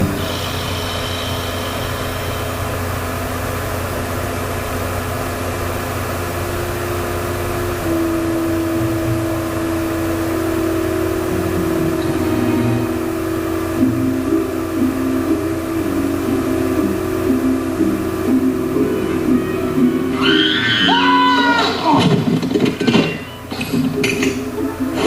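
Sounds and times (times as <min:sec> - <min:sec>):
engine running: 0:00.0 - 0:25.0
steady hum: 0:00.0 - 0:25.0.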